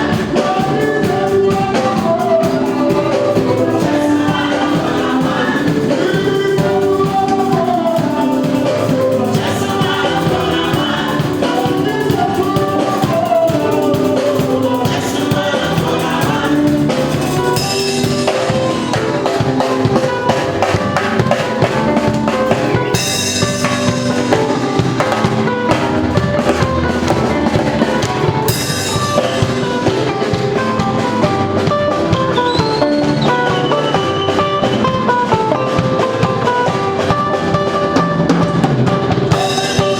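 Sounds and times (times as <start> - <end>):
live band playing: 0.0 - 39.9.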